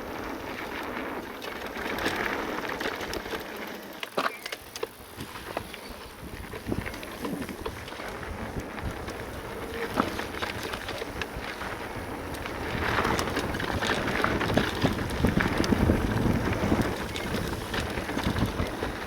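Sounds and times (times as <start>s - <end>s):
stones and bike rattling: 0.0s - 19.0s
tyres rushing over gravel: 0.0s - 19.0s
wind buffeting microphone: 5.0s - 19.0s.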